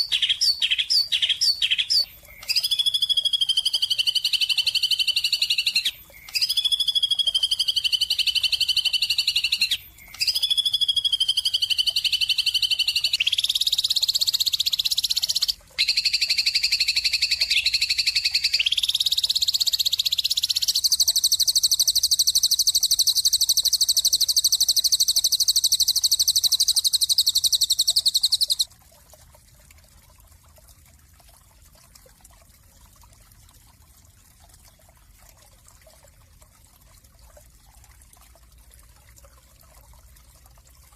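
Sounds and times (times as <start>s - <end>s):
bird singing high trills: 0.0s - 28.7s.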